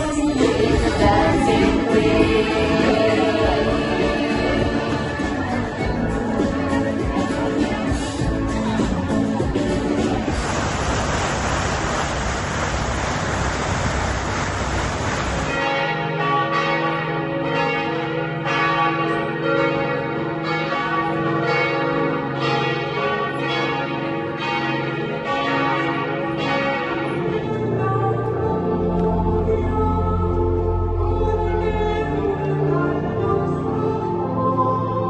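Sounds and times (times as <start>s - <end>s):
church bells ringing: 0.0s - 10.0s, 15.4s - 35.0s
broad rushing noise: 9.7s - 15.5s.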